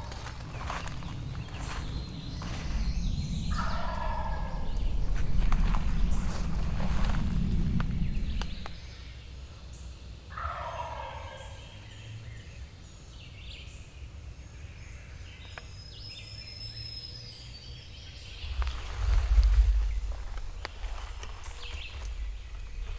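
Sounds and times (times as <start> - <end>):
distant turkey gobbling: 0.0 - 7.2, 10.3 - 11.8
low rumble: 0.0 - 9.9, 18.2 - 22.9
faint songbird notes: 0.0 - 22.9.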